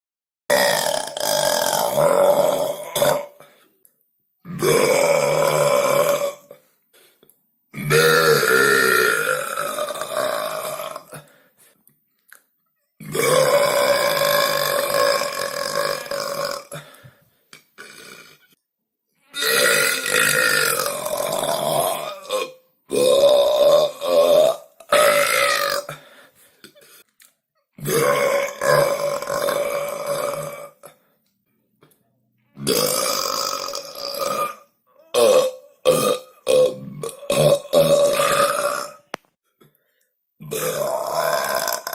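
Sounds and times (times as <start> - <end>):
boy burping: 0.5 - 3.4, 4.4 - 6.6, 7.7 - 11.2, 13.0 - 18.6, 19.3 - 27.1, 27.8 - 31.0, 32.6 - 39.2, 40.4 - 41.9.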